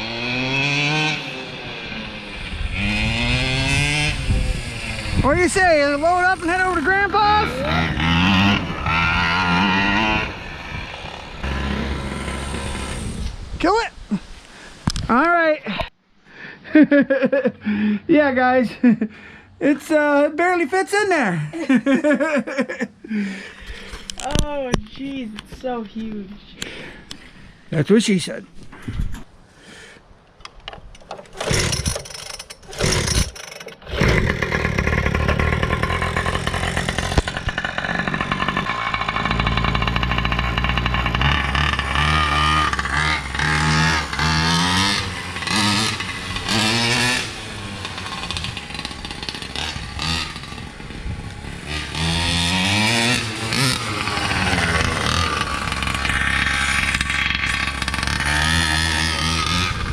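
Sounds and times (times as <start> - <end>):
small two-stroke engine revving: 0.0 - 13.4, 31.3 - 59.9.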